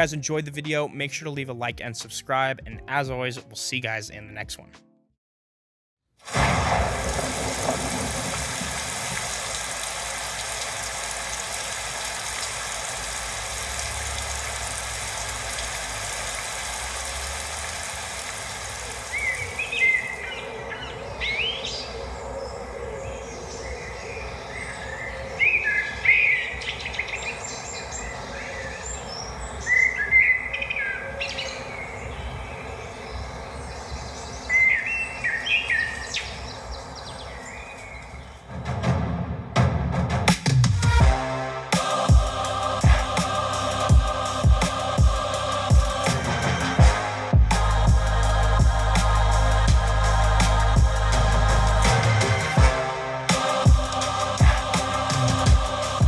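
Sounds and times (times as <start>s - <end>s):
birds chirping: 7.5s - 38.5s
steady rushing noise: 41.7s - 56.0s.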